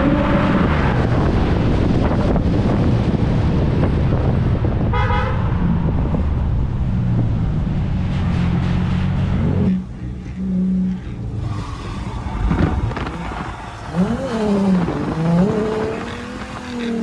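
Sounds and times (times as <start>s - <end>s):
car engine running hard: 0.0s - 17.0s
car horn toot: 4.9s - 5.5s.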